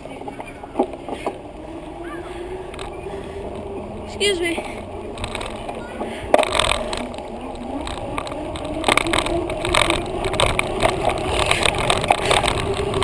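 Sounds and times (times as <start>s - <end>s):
bicycle rattle: 0.0s - 13.0s
bicycle whirring hum: 0.0s - 13.0s
wind rumble: 0.0s - 13.0s.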